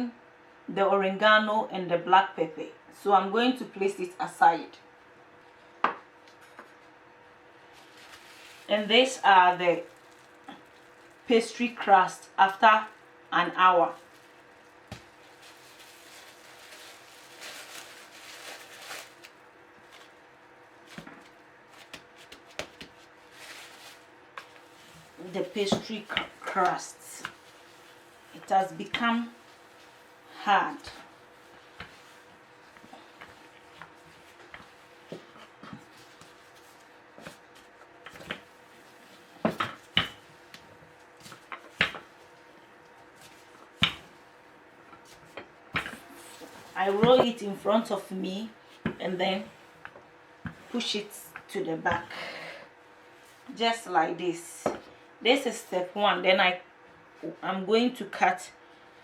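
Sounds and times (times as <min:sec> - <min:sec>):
cling film rustling: 0:07.7 - 0:09.0, 0:13.9 - 0:20.2.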